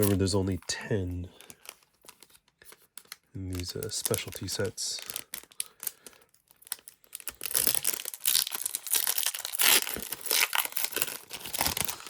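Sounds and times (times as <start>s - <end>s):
foil pack tearing open: 0.0s - 0.3s, 3.6s - 12.0s.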